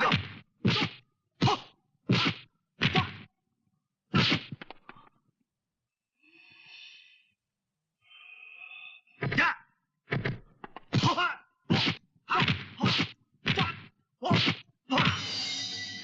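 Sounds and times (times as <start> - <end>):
sharp fight whacks: 0.0 - 3.3, 4.1 - 4.6, 10.1 - 15.3.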